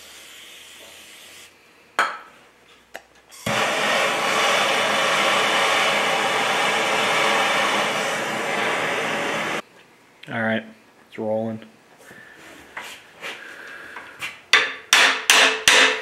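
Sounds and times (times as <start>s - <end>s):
gas jet hissing: 3.4s - 9.6s.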